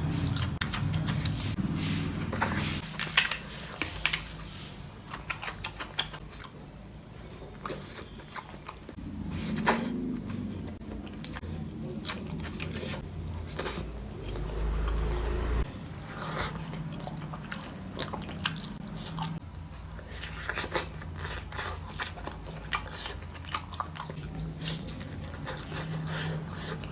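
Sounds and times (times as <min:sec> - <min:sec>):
person chewing crunchy food: 0:00.0 - 0:26.9
low hum: 0:09.0 - 0:17.3.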